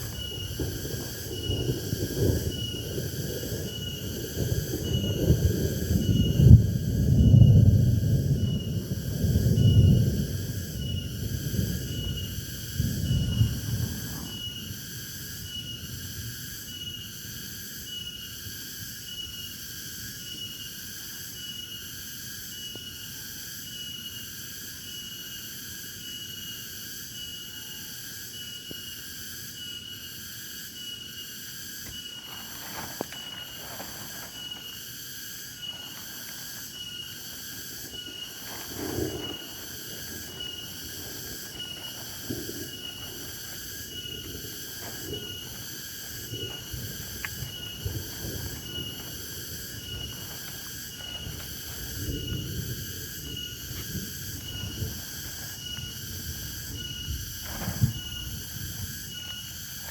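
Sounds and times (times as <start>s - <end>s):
insects pulsing chirr: 0.0s - 59.9s.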